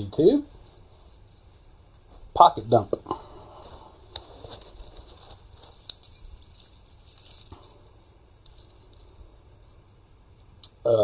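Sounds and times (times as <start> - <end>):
keys and coins clinking: 5.2 - 9.2.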